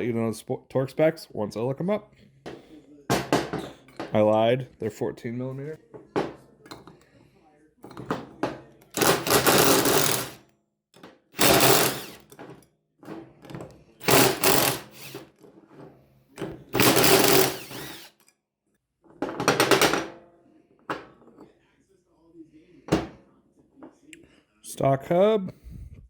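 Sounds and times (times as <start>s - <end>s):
impact wrench hammering: 8.9s - 10.4s, 11.4s - 12.4s, 14.0s - 15.3s, 16.7s - 18.2s.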